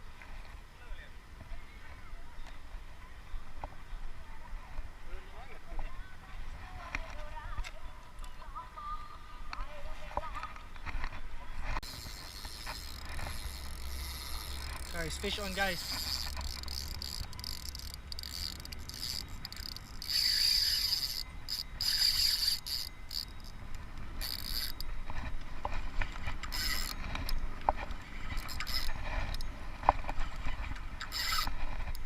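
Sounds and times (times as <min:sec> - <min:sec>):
sharp reel clicks: 0:11.8 - 0:24.9, 0:26.0 - 0:30.0, 0:30.6 - 0:32.0
fishing reel whirring: 0:11.8 - 0:27.4, 0:28.1 - 0:29.6, 0:30.4 - 0:32.0.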